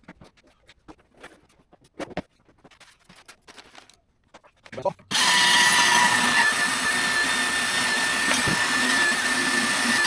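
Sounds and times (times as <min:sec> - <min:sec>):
power tool whining: 0:05.1 - 0:10.0.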